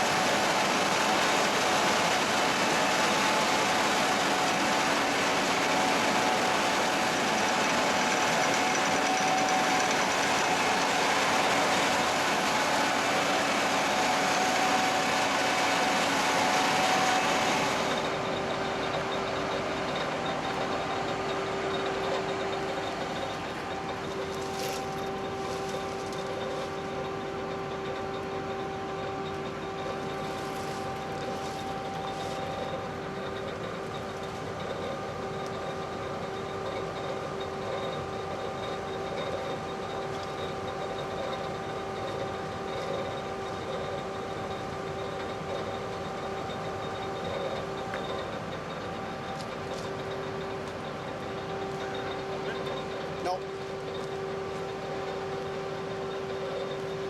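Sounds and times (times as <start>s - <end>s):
combine harvester running: 0.0s - 57.0s.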